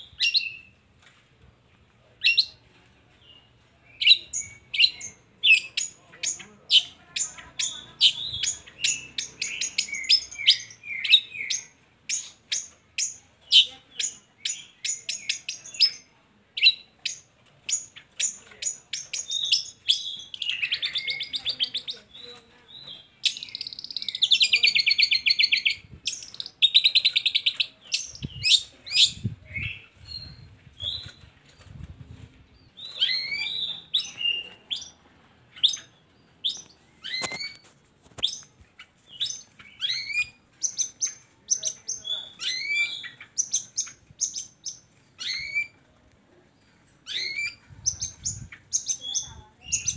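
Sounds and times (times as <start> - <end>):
bird singing chips and whistles: 32.8 - 34.9, 35.6 - 38.5.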